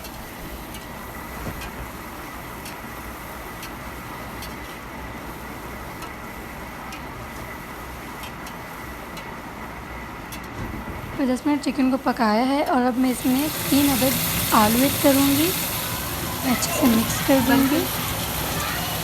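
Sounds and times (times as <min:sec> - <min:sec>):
chicken sizzling in oil: 0:13.0 - 0:19.0.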